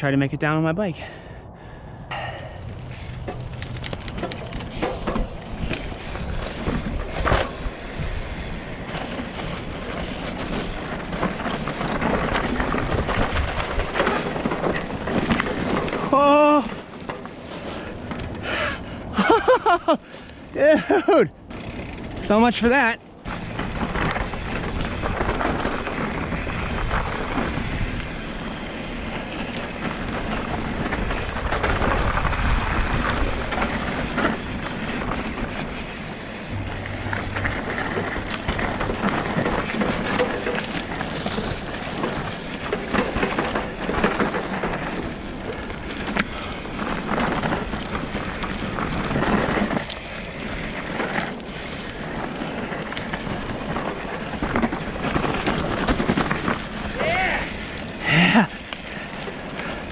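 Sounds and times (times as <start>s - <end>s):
wind rumble on microphone: 2.6s - 16.2s, 23.2s - 51.3s
bike clattering over rough ground: 2.9s - 18.6s, 21.4s - 59.9s.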